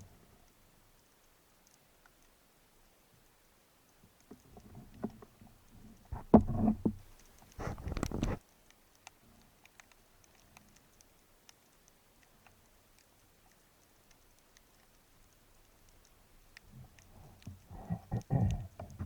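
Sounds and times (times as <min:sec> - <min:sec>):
faint scattered clicks: 0:00.0 - 0:19.0
underwater knocks and rumbles: 0:06.1 - 0:08.4.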